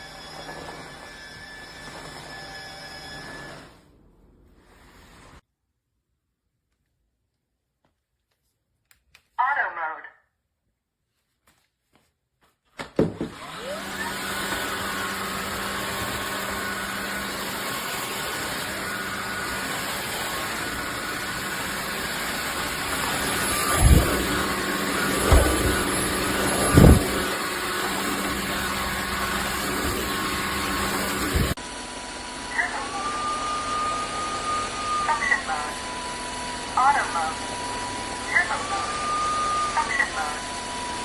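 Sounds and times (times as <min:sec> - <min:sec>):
floor vacuum running with whine: 0:00.0 - 0:05.4, 0:12.9 - 0:41.0
dull thumps: 0:12.8 - 0:13.4, 0:25.1 - 0:27.2.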